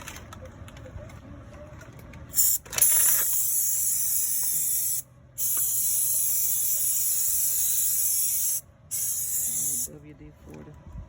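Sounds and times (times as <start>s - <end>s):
aerosol can spraying: 2.4s - 9.9s.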